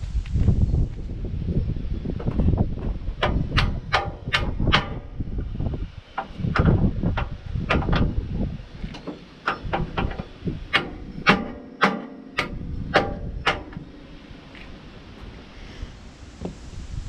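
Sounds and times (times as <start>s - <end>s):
hammer striking steel: 9.5s - 14.1s.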